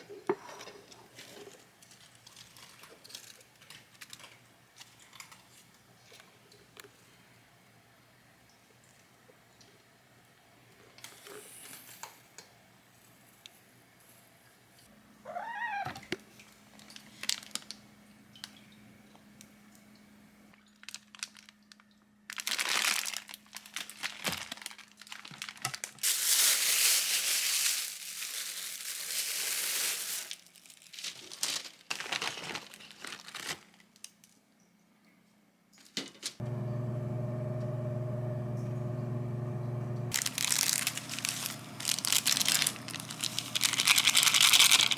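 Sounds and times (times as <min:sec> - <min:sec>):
crinkling and rustling: 0:00.0 - 0:07.0, 0:15.9 - 0:17.8, 0:20.6 - 0:34.4, 0:35.8 - 0:44.9
cat meowing: 0:15.3 - 0:16.1
steady low hum: 0:36.4 - 0:44.9.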